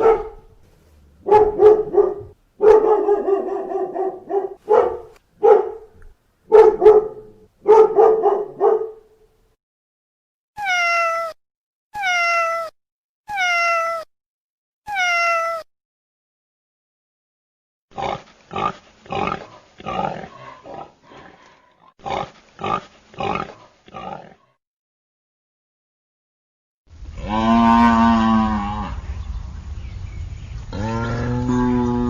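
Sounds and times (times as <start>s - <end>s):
cat meowing: 10.6s - 11.4s, 12.0s - 14.1s, 14.9s - 15.7s.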